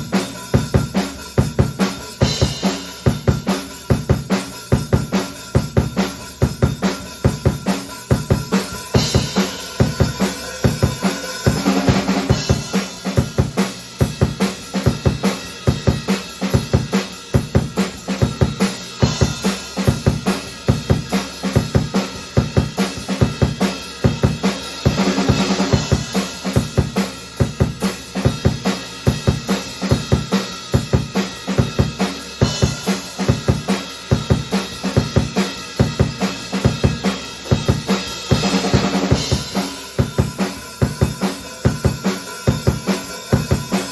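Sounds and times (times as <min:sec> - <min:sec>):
bass drum and snare beat: 0:00.0 - 0:43.9.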